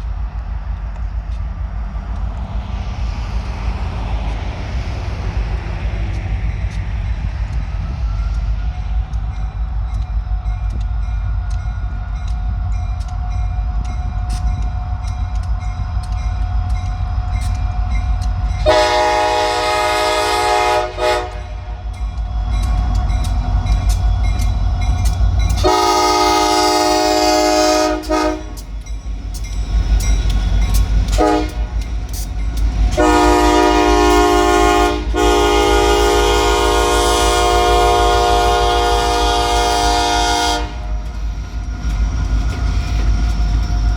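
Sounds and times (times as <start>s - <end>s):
train rumbling: 0.0s - 43.9s
wheels clicking on rails: 0.0s - 43.9s
locomotive horn blasts: 18.6s - 21.8s, 25.6s - 28.7s, 31.2s - 31.8s, 33.0s - 40.9s.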